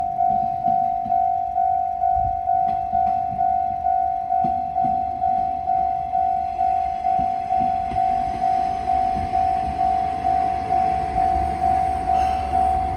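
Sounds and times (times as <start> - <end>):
level crossing alarm bell: 0.0 - 12.9.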